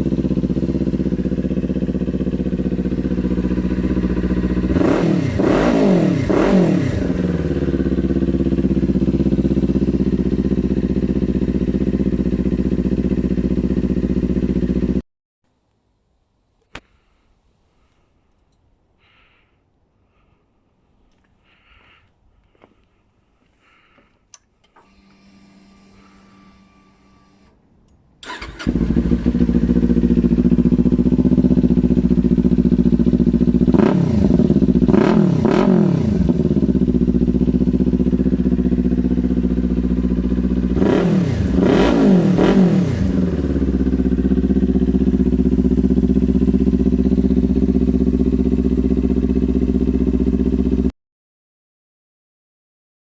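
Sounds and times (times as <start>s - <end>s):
motorcycle engine revving: 0.0s - 15.0s, 28.2s - 50.9s
motorcycle engine starting and idling: 0.0s - 15.0s, 21.4s - 50.9s.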